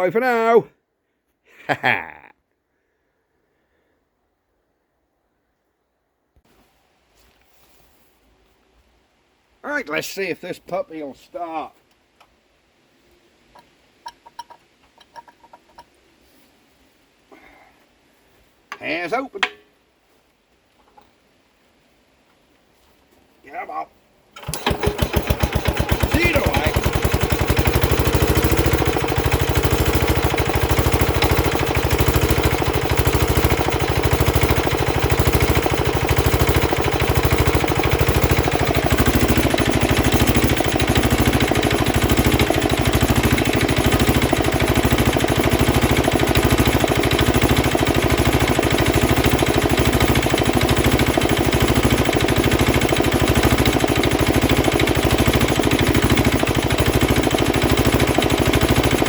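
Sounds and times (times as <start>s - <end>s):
diesel engine running: 24.4s - 59.0s.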